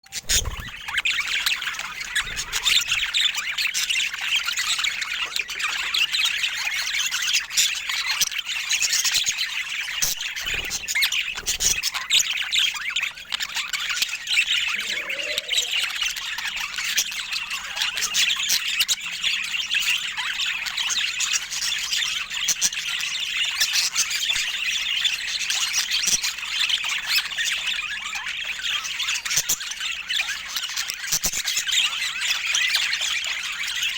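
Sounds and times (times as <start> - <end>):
budgerigars chattering: 0.1 - 13.5, 14.4 - 16.4.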